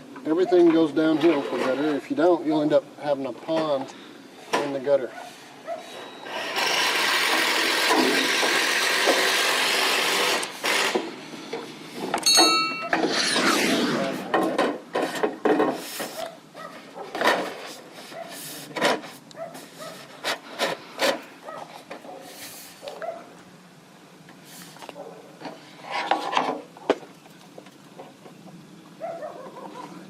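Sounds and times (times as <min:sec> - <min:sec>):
metal gutter scraping: 0:00.6 - 0:02.2, 0:12.2 - 0:22.4, 0:25.4 - 0:26.8.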